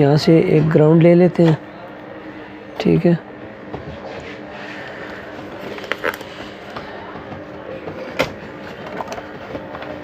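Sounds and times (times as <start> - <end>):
faint steady hum: 0.0 - 10.0.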